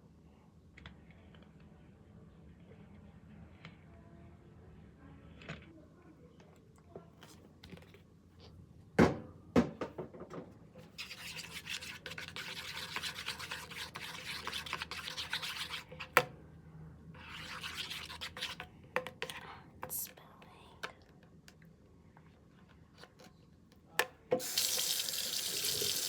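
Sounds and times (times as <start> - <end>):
slime being stirred: 10.9 - 16.3, 17.2 - 19.4.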